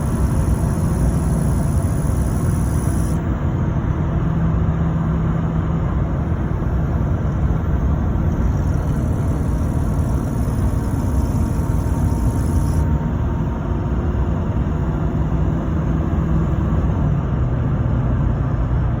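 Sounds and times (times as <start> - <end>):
faint high-pitched whine: 0.0 - 3.4, 6.0 - 13.0
turbocharger whining: 0.0 - 17.2
diesel engine rumbling: 0.0 - 19.0.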